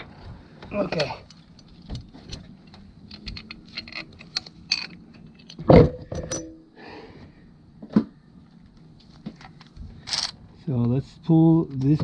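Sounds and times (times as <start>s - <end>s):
metal tools clinking: 3.0s - 6.6s
ringing metallic clunk: 5.6s - 6.6s.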